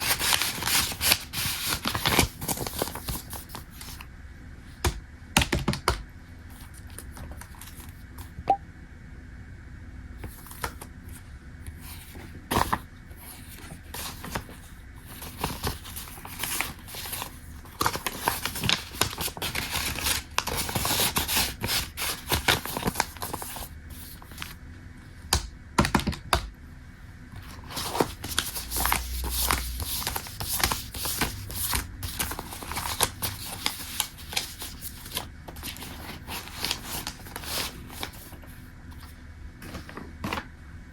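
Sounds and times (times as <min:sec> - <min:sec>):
paper rustling: 0:00.0 - 0:04.0, 0:11.7 - 0:24.6, 0:27.4 - 0:40.5.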